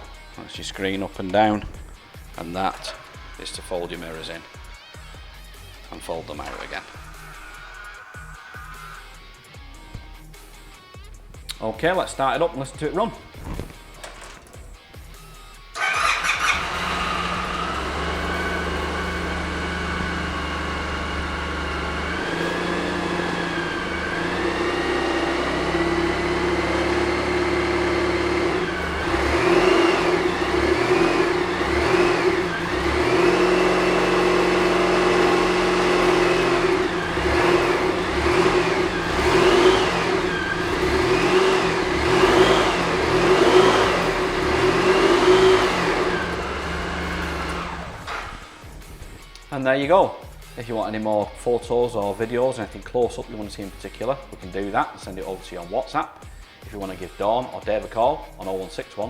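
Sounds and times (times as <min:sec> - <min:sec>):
motorcycle engine starting: 0:00.8 - 0:04.7, 0:06.3 - 0:08.3, 0:13.0 - 0:49.4
motorcycle engine idling: 0:01.2 - 0:05.5, 0:13.9 - 0:49.3
engine revving blips: 0:15.8 - 0:49.0.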